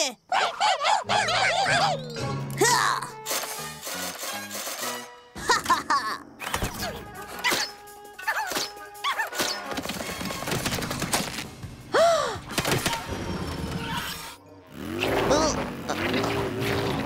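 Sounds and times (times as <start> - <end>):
squeaky cartoon sound effects: 1.0 - 3.2.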